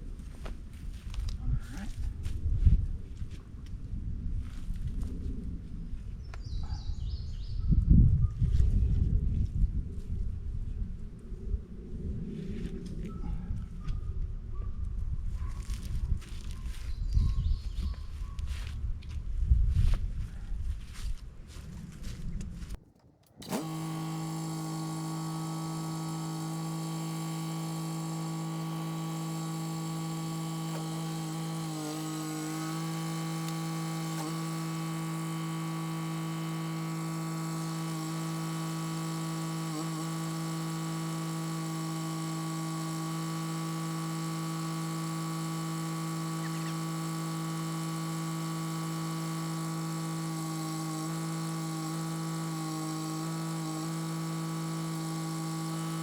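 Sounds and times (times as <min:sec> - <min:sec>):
tractor diesel engine running: 0:22.6 - 0:56.0.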